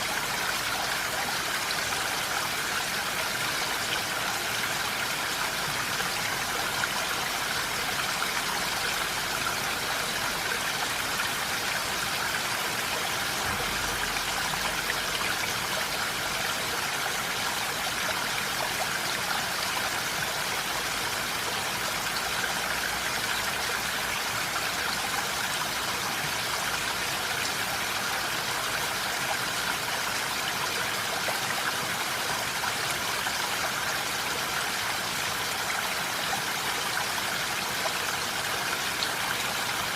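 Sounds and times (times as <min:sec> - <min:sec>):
steady rain: 0:00.0 - 0:39.9.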